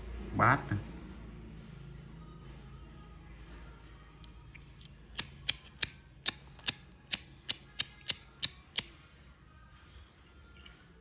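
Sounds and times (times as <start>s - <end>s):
lighter flint wheel clicks: 4.2s - 9.0s.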